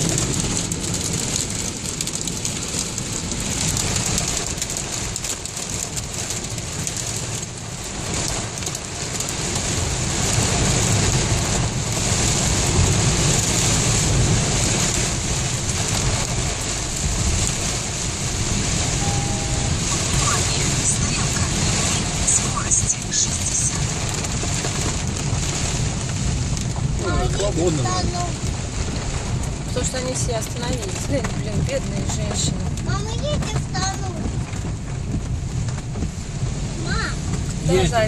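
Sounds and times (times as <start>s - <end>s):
car driving through water: 0.0s - 38.0s
heavy rain drumming on car roof: 0.0s - 38.0s.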